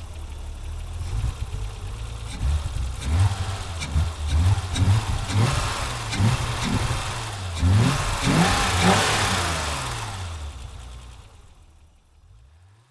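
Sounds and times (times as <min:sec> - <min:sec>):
misfiring car engine revving: 0:00.0 - 0:12.9.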